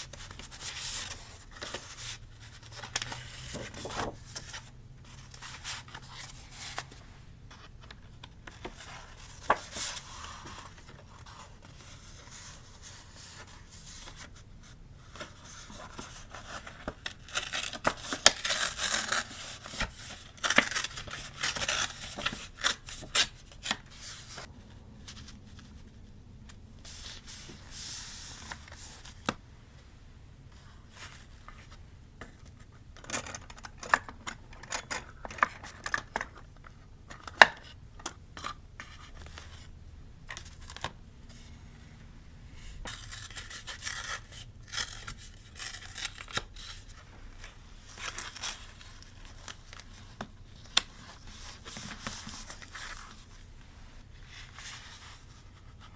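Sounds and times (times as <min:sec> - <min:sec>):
paper rustling and tearing: 0:15.2 - 0:24.5, 0:42.8 - 0:50.1.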